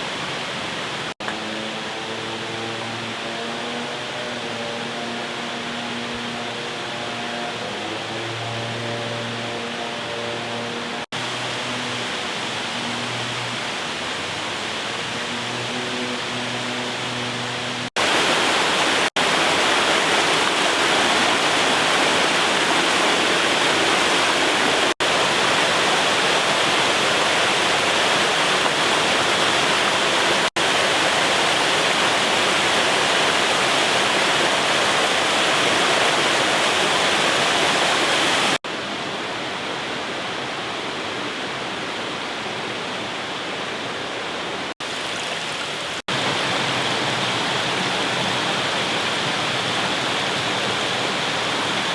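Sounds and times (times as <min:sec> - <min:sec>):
waterfall rushing: 0:16.2 - 0:39.9, 0:40.8 - 0:51.9.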